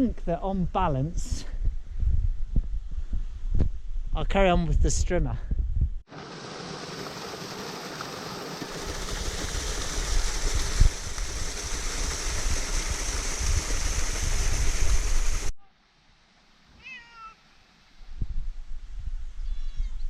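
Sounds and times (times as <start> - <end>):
wind noise on microphone: 0.1 - 6.1, 8.7 - 15.6, 18.0 - 20.0
cat meowing: 16.8 - 17.4, 19.4 - 19.9.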